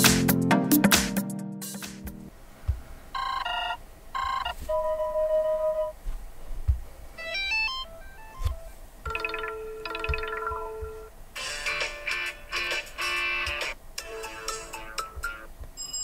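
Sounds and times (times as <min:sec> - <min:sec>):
soft thumps: 0:02.6 - 0:02.9, 0:06.0 - 0:07.1, 0:10.0 - 0:11.1
phone ringtones playing: 0:03.2 - 0:05.9, 0:07.2 - 0:11.1, 0:15.8 - 0:16.0.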